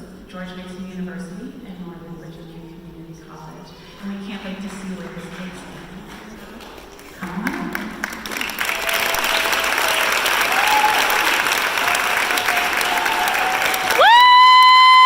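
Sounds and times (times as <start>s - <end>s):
audience applauding: 3.9s - 15.0s.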